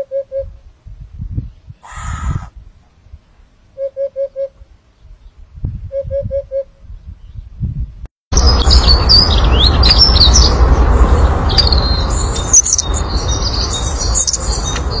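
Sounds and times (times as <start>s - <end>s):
steady low rumble: 0.5s - 3.7s, 4.6s - 15.0s
small birds chirping: 1.4s - 2.6s, 11.4s - 15.0s.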